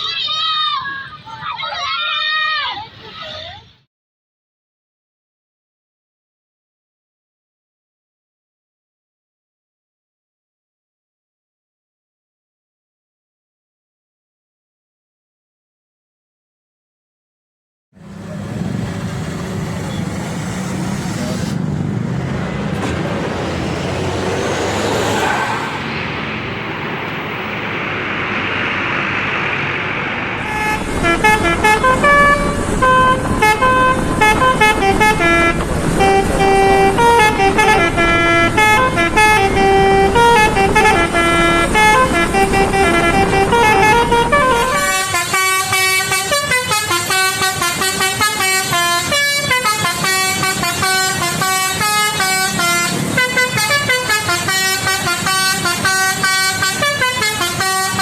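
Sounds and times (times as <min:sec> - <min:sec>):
bus engine: 0:18.0 - 0:58.0
higher repeating horn tune: 0:30.3 - 0:58.0
musical bus horn melody: 0:30.4 - 0:58.0.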